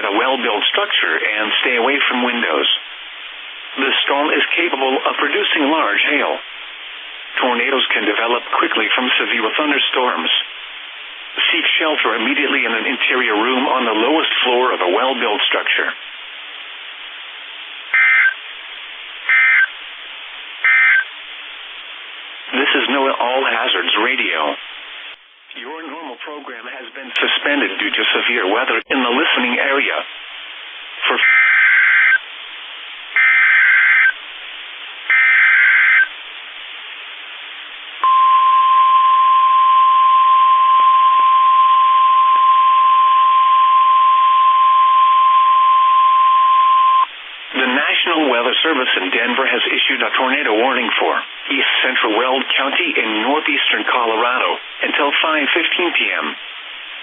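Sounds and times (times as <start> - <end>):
radio hiss: 0.0 - 57.0
buzzy digital data bursts: 17.9 - 18.4, 19.3 - 19.8, 20.6 - 21.1, 31.2 - 32.2, 33.2 - 34.2, 35.1 - 36.1
steady warning alarm tone: 18.0 - 18.4, 19.3 - 19.7, 20.6 - 21.1, 33.2 - 34.2, 35.1 - 36.1, 38.0 - 47.1.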